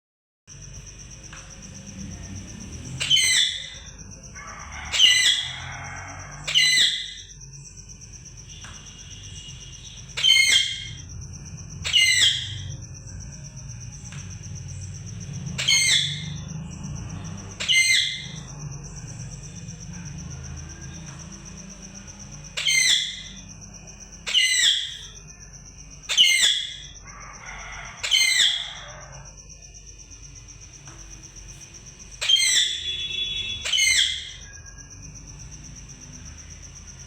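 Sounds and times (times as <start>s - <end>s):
parrot screeching: 3.0s - 3.8s, 4.4s - 7.3s, 10.2s - 11.0s, 11.8s - 12.7s, 15.6s - 16.4s, 17.6s - 18.4s, 22.6s - 23.4s, 24.2s - 25.1s, 26.1s - 29.3s, 32.2s - 34.6s.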